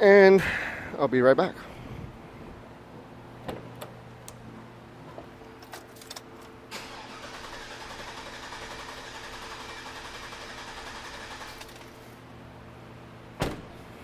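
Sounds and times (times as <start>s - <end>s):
engine idling with misfire: 6.7s - 12.2s.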